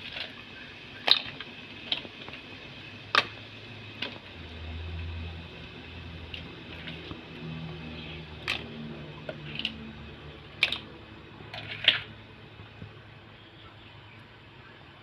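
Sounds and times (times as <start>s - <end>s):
clicks and knocks in a pot: 1.0s - 2.5s, 8.4s - 9.9s, 10.5s - 12.1s.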